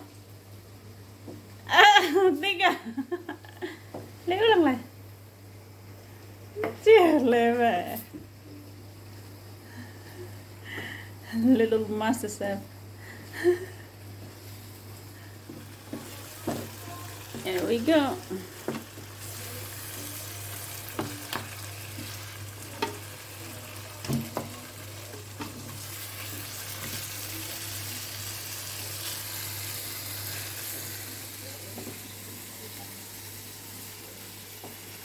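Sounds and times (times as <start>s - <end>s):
food sizzling in a pan: 11.8s - 35.0s.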